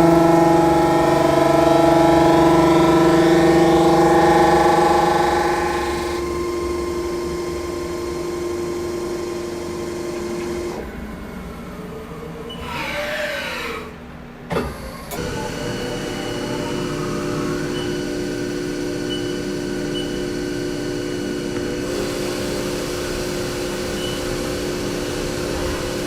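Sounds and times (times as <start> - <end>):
sweeping machine pitches: 0.0 - 7.8
milling machine whine: 0.0 - 26.0.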